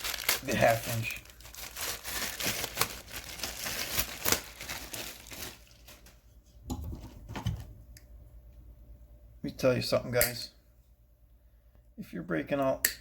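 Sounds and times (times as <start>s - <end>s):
packaging crinkling and rustling: 0.0s - 6.4s.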